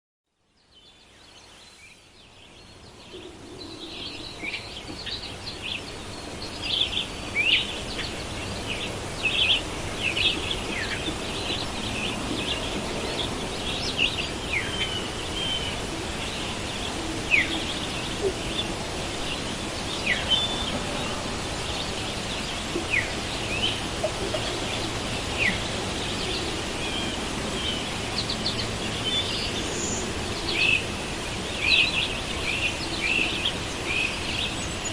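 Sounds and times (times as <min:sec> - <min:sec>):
steady background hiss: 0:00.4 - 0:34.9.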